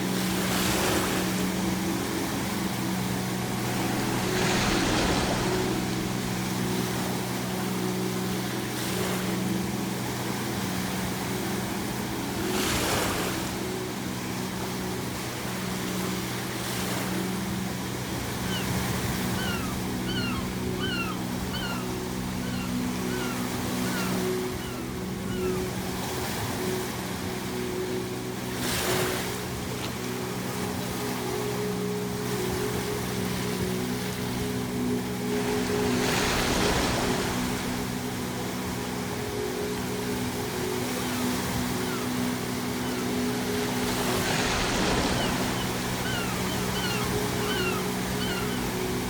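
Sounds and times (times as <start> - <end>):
waves breaking on shore: 0.0 - 49.0
gulls calling: 16.6 - 29.1, 32.5 - 49.0.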